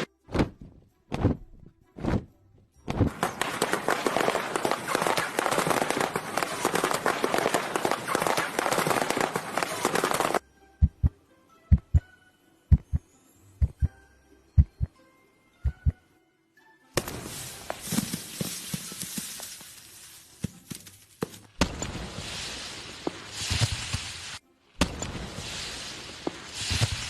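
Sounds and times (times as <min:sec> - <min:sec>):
heartbeat thumps: 0:10.8 - 0:12.1, 0:12.7 - 0:13.0, 0:13.6 - 0:14.0, 0:14.6 - 0:14.9, 0:15.6 - 0:16.0.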